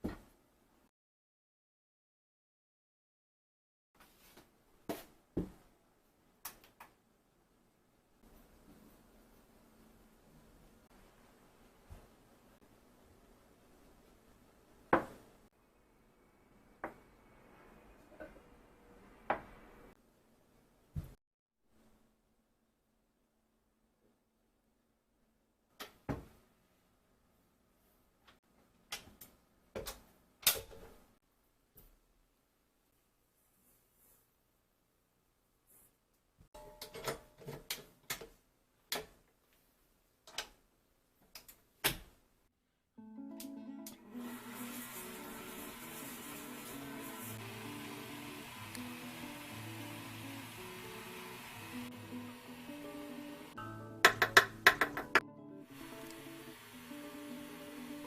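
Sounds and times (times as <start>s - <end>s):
objects knocking and clicking: 54.1s - 55.2s.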